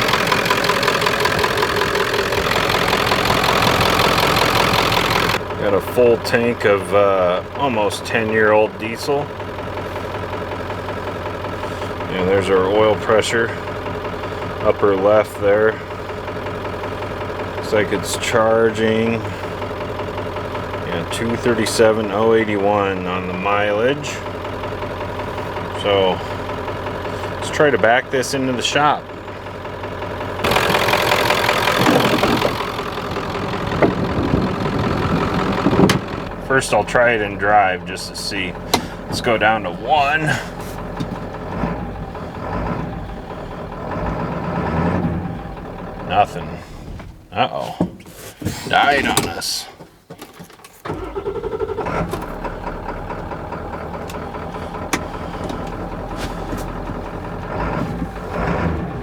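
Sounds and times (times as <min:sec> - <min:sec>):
starter motor whine and cranking: 0:00.0 - 0:06.0, 0:29.3 - 0:47.3, 0:50.2 - 0:59.0
diesel engine idling: 0:00.0 - 0:59.0.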